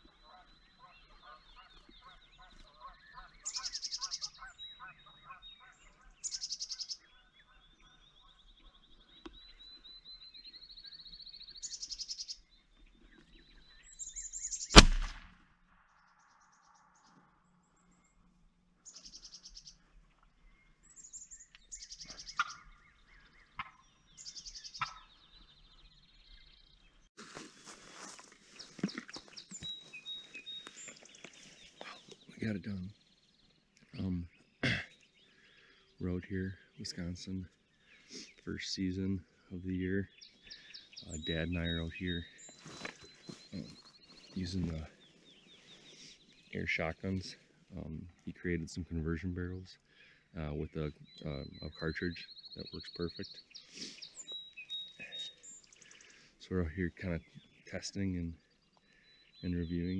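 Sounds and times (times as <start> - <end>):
turkeys calling: 0.0 - 10.1, 21.1 - 25.7, 49.8 - 59.8
loud gunshot: 14.8 - 15.4
rustling: 27.2 - 32.2.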